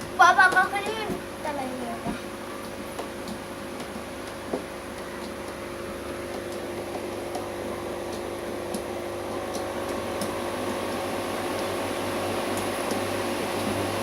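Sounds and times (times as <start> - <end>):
aquarium pump humming: 0.0 - 14.0.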